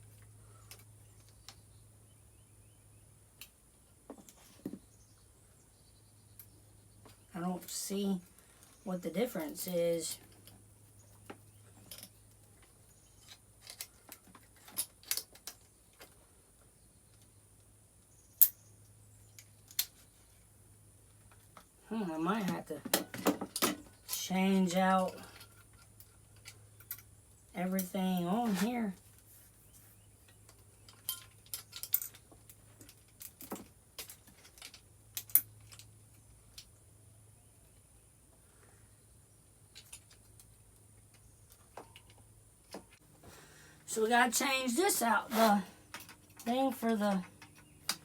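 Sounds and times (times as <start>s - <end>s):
faint steady hum: 0.0s - 48.0s
small metal parts clinking: 11.7s - 16.2s, 25.0s - 27.1s, 30.5s - 36.7s, 39.7s - 40.6s
metal parts clinking: 30.9s - 35.9s.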